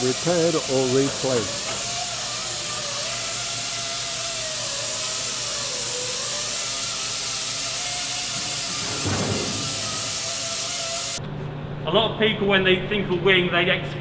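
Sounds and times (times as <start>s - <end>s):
steady hissing noise: 4.8s - 11.2s.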